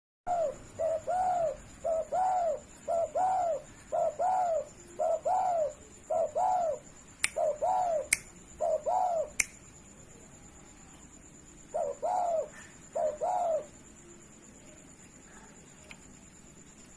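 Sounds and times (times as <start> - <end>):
dove cooing: 0.3 - 9.4, 11.7 - 13.8
faint high whine: 0.3 - 16.9
sharp clicks: 8.1 - 8.4, 9.4 - 9.6.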